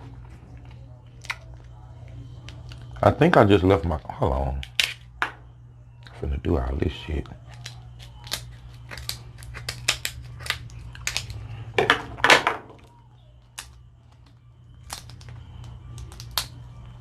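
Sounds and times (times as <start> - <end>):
crab shell cracking: 4.6 - 5.1, 7.4 - 11.4, 13.4 - 16.6.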